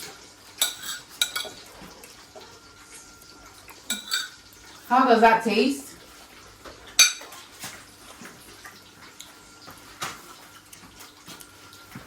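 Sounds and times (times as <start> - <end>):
cutlery tapping dishes: 0.6 - 1.6, 3.9 - 4.4, 7.0 - 7.4.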